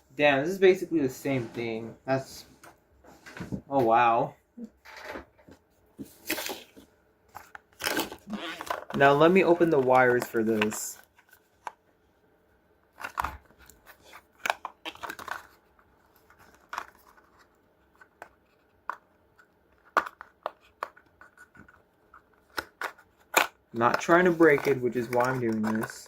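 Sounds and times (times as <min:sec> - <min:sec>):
plastic rustling: 0:06.0 - 0:11.8, 0:12.9 - 0:26.0
packaging clicks and snips: 0:19.7 - 0:26.0.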